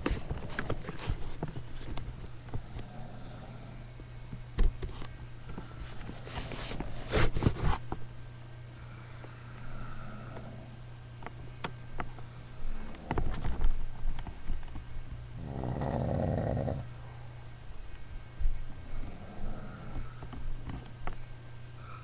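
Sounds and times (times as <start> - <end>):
noisy breaths: 0.0 - 7.9, 8.7 - 10.8, 12.0 - 13.9, 16.7 - 17.6, 18.4 - 22.0
steady low hum: 0.0 - 22.0
snoring: 2.5 - 3.9, 8.8 - 10.8, 15.4 - 16.9, 18.9 - 20.4.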